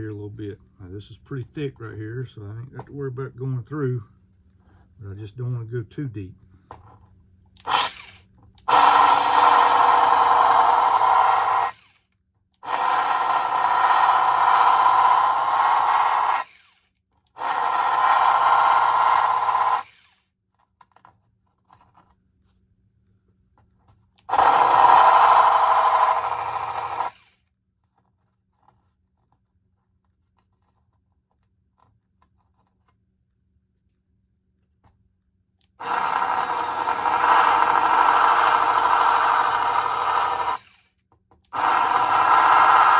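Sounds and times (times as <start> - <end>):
electric sander grinding plastic: 7.6 - 12.0, 12.6 - 16.8, 17.4 - 20.2, 24.2 - 27.3, 35.8 - 40.8, 41.5 - 42.9.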